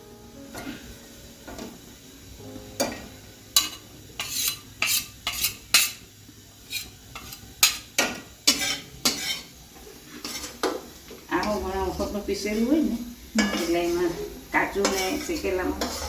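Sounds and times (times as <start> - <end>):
utensil scraping a pan: 3.6 - 6.0, 6.6 - 10.7, 13.4 - 16.0.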